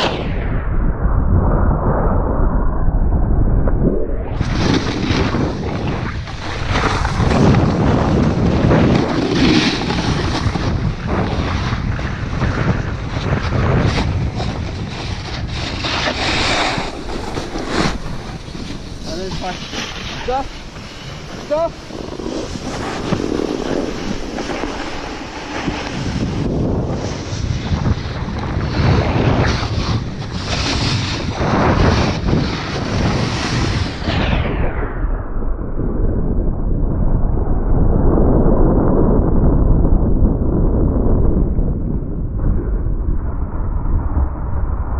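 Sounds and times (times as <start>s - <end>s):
wind buffeting microphone: 0.0s - 44.9s
snowboard sliding over snow: 4.4s - 34.4s.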